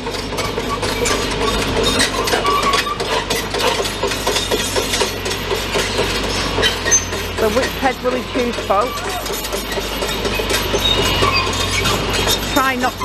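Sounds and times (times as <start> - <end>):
excavator engine running: 0.0 - 13.0
metal knocks and clanks: 0.0 - 13.0.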